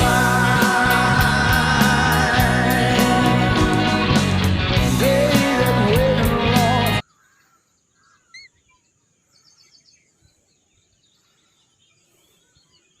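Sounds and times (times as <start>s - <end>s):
song with singing: 0.0s - 7.0s
bird chirps and trill: 7.0s - 13.0s.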